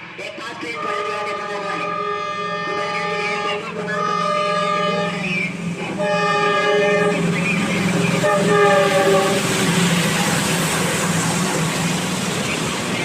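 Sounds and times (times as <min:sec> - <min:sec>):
train horn blasts: 0:00.8 - 0:05.3, 0:05.9 - 0:09.5.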